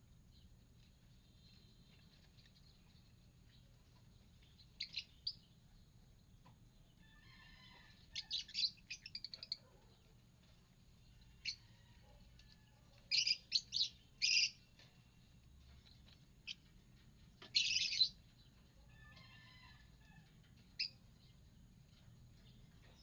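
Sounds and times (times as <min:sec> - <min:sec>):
lovebirds chirping: 0:00.2 - 0:10.2, 0:12.9 - 0:16.7, 0:17.4 - 0:19.5.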